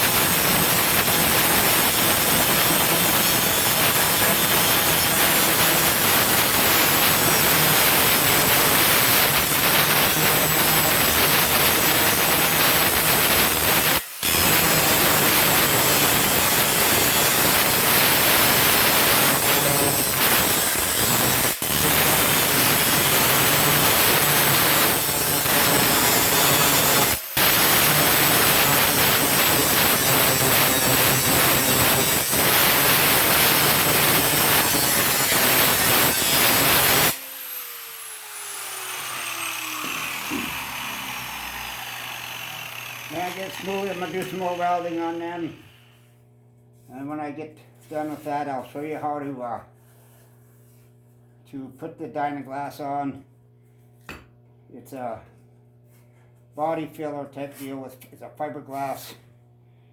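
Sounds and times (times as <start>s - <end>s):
power grinder grinding metal: 0.0s - 45.9s.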